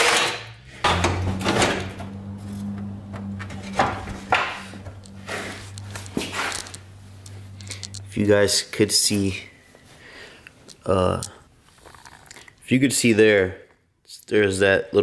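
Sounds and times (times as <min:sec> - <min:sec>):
steady low hum: 0:00.6 - 0:11.6.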